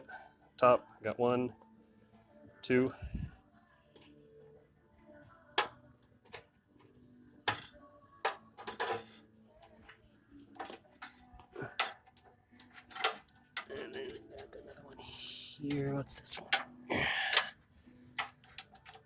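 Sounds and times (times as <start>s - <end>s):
plastic clips clicking: 16.5s - 17.5s.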